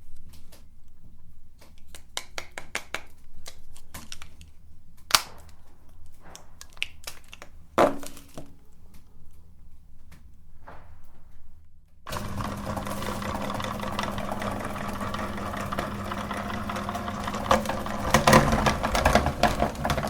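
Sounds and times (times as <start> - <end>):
loud knocks: 12.1 - 20.0.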